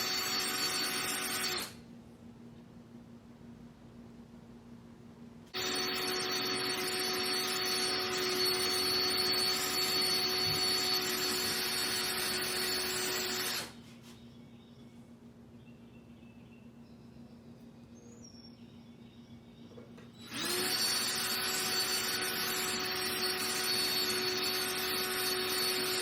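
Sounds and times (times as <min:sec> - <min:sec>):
electric drill boring: 0:00.0 - 0:01.8, 0:05.6 - 0:13.8, 0:20.2 - 0:26.0.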